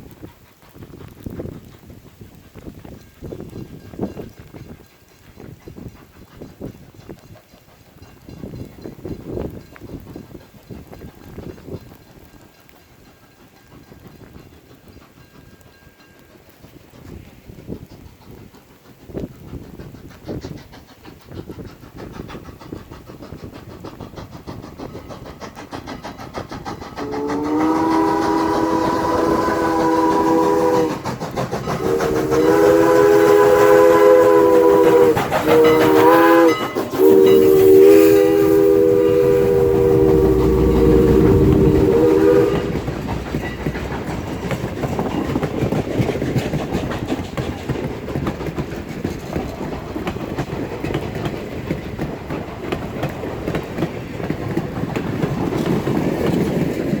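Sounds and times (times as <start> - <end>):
passing train running noise: 0.0 - 57.0
steam locomotive chime whistle: 27.0 - 44.6
low rumble: 38.8 - 45.1.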